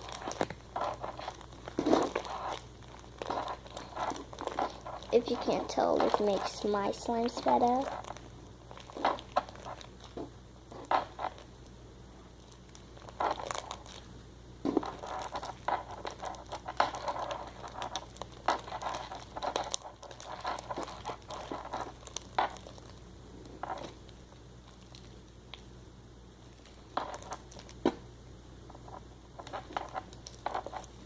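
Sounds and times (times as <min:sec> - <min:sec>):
slime squished by hand: 0:00.0 - 0:11.7, 0:12.3 - 0:14.1.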